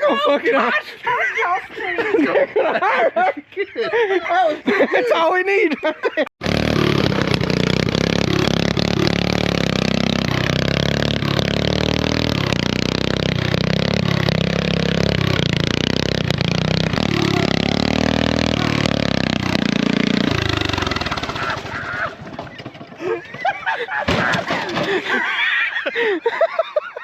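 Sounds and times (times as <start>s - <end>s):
motor engine running hard: 6.4s - 25.2s
clattering and scraping knocks: 18.4s - 25.6s.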